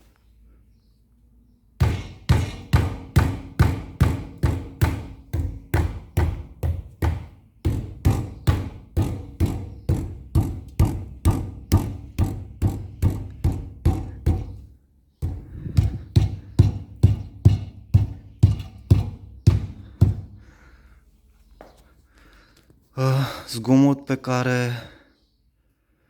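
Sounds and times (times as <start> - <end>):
hand knocking on car wheel: 1.8 - 14.6, 15.2 - 20.4.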